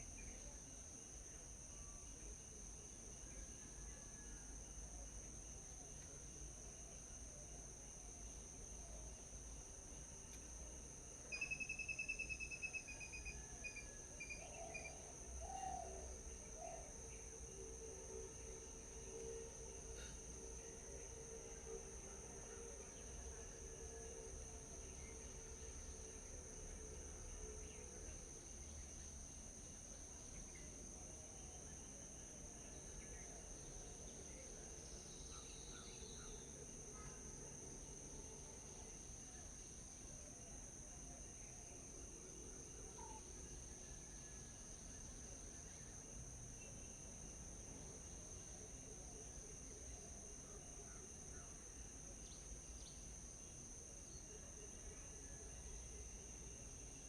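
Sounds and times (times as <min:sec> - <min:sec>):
high-pitched insect drone: 0:11.3 - 0:14.9
faint bird chirps: 0:11.3 - 0:16.9.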